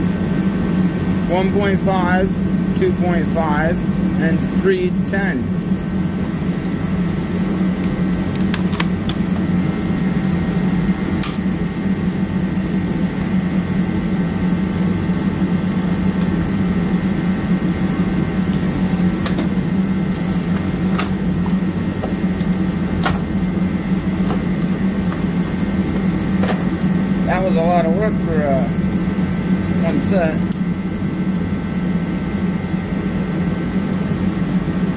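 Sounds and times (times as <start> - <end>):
heater humming: 0.0 - 34.9.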